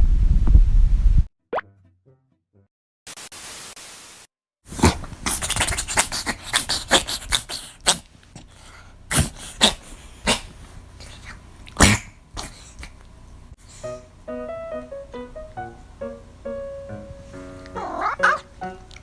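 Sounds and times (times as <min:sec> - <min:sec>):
cat sneezing: 0:04.7 - 0:08.1, 0:09.1 - 0:12.9.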